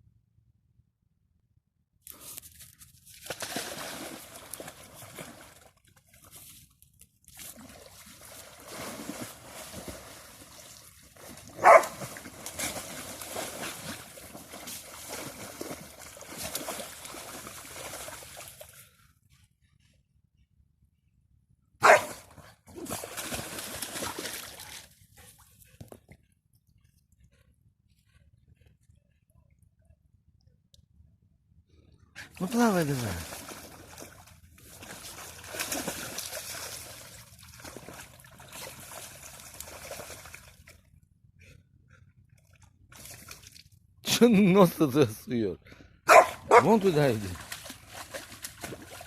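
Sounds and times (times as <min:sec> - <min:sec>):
water sloshing and splashing: 0:02.1 - 0:19.5, 0:21.8 - 0:26.2, 0:32.2 - 0:41.0, 0:41.9 - 0:44.0, 0:46.1 - 0:49.0.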